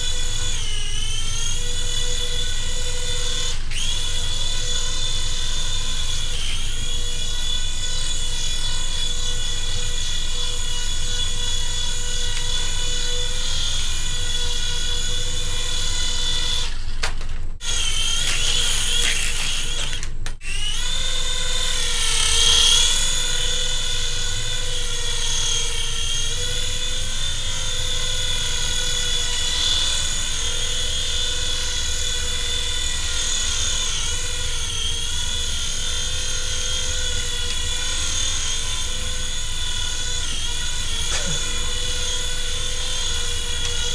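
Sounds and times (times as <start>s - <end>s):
toy helicopter motors whining: 0.0s - 17.0s, 17.6s - 43.9s.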